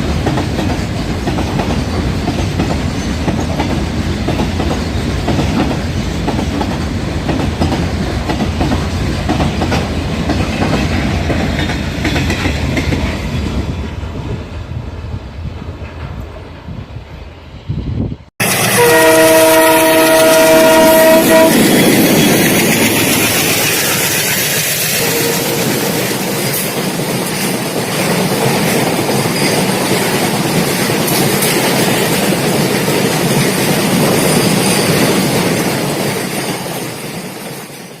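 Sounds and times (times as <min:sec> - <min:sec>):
wheels clickety-clack on rails: 0:00.0 - 0:14.6, 0:18.4 - 0:38.0
train air horn blast: 0:18.4 - 0:21.8, 0:25.0 - 0:26.2.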